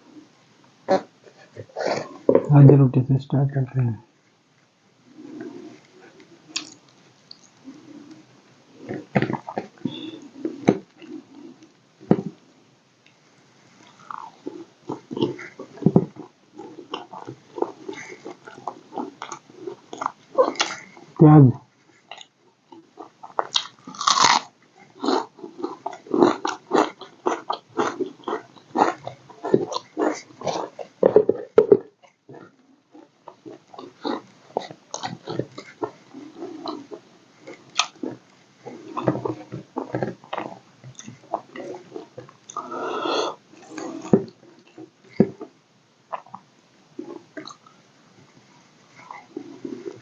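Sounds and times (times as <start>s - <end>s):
person chewing and crunching: 6.5s - 7.6s, 13.8s - 21.0s, 22.1s - 45.5s, 47.0s - 47.7s.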